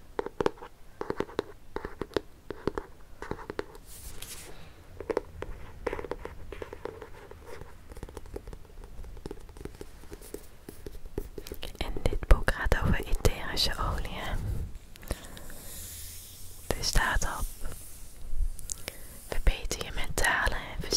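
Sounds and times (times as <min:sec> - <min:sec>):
fingernails tapping on a book: 0:00.2 - 0:03.8, 0:05.0 - 0:11.8.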